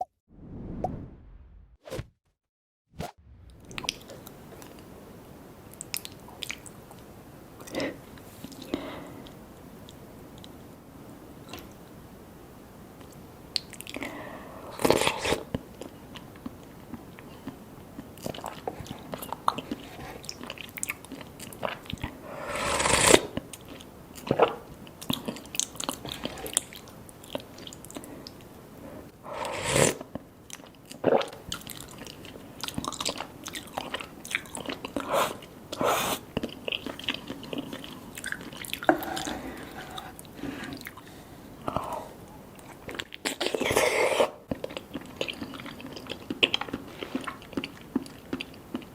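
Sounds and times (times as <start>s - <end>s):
rushing sounds: 0.3s - 2.1s, 3.0s - 4.7s
chewing with wet smacks: 15.8s - 22.2s, 23.4s - 28.4s, 30.1s - 35.6s, 36.3s - 39.3s, 44.5s - 48.9s.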